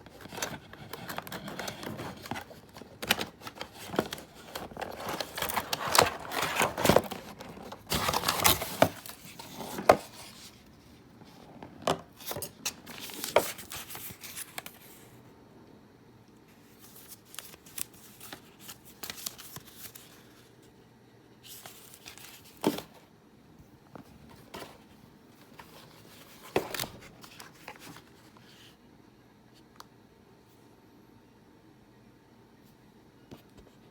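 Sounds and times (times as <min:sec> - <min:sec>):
packaging rustling and crinkling: 0:00.0 - 0:14.9, 0:24.0 - 0:28.6.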